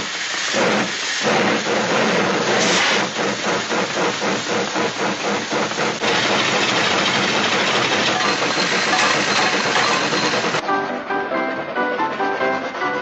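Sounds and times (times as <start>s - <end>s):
mechanical engine chugging: 0.6s - 13.0s.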